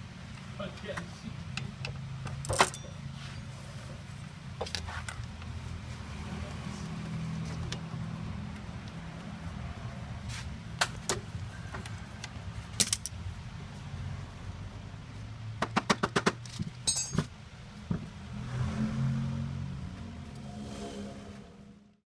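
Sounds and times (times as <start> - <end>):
metallic jangle: 2.5 - 3.1.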